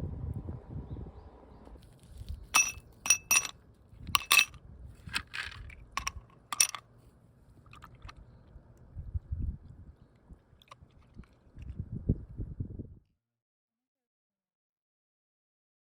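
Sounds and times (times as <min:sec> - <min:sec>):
hard objects clinking together: 0:02.6 - 0:03.5, 0:04.2 - 0:04.5, 0:05.1 - 0:06.8.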